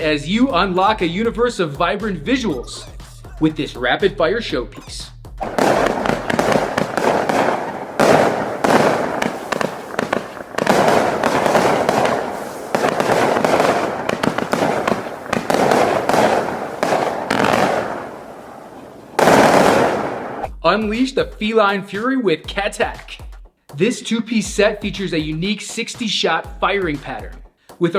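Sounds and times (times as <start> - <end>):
firework cakes firing: 5.4 - 20.5.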